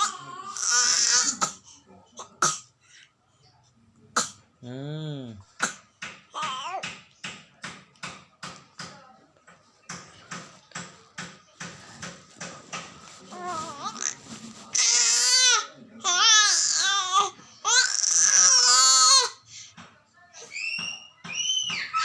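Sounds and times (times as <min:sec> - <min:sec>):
toddler crying: 0:14.8 - 0:19.3.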